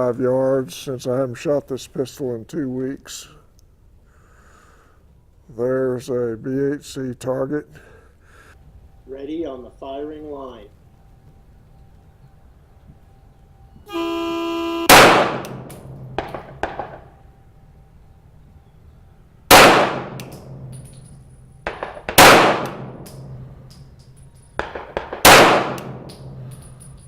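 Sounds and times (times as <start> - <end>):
electronic start tone: 13.2 - 14.9
faint gunshot reports: 14.9 - 17.0, 22.1 - 23.0, 25.2 - 26.1
pistol shots: 14.9 - 17.1, 19.5 - 21.0, 21.6 - 23.4, 24.6 - 26.5.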